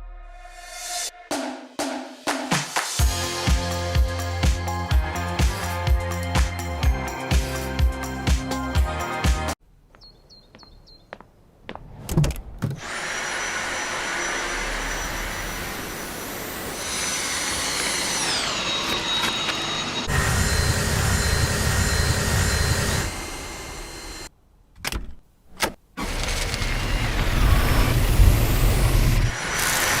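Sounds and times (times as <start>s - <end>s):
handheld vacuum cleaner whine: 12.8s - 24.3s, 26.0s - 30.0s.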